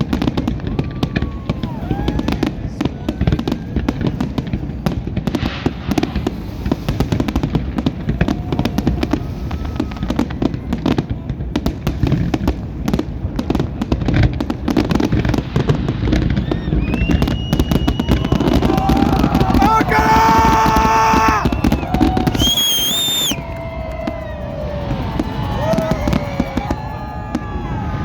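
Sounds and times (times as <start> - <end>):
fireworks bangs and crackling: 0.0 - 28.0.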